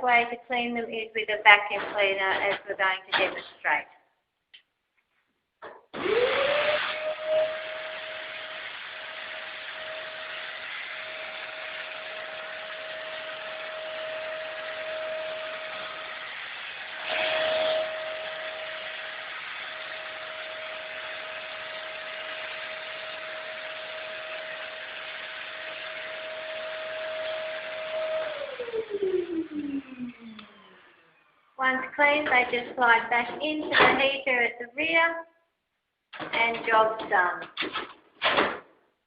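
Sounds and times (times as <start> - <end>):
vacuum cleaner running: 5.9 - 34.1.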